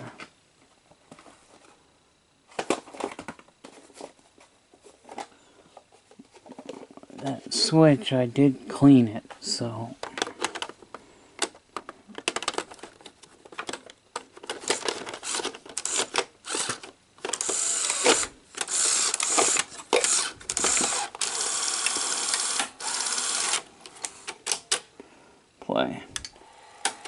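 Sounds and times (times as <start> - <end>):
mechanical whirring: 14.6 - 24.6.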